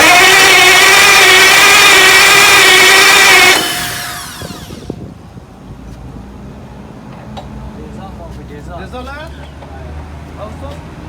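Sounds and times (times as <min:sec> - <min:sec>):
starter motor cranking engine: 0:00.0 - 0:05.2.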